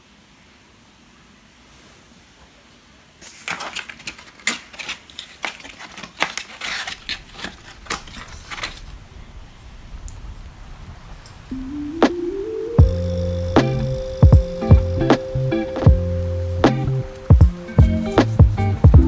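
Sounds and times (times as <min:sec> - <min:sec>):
objects being handled: 0:03.2 - 0:09.0.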